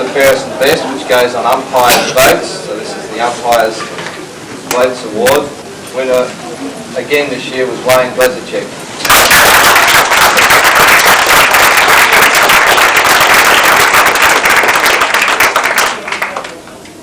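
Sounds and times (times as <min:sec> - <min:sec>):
audience applauding: 0:09.0 - 0:16.7.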